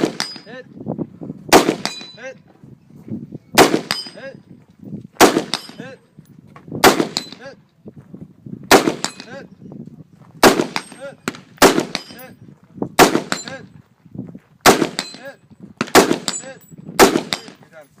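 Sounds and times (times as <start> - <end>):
shotgun shots with echo: 0.0 - 0.5, 1.5 - 2.2, 3.6 - 4.2, 5.2 - 5.9, 6.8 - 7.4, 8.7 - 9.4, 10.4 - 12.3, 13.0 - 13.6, 14.6 - 17.6.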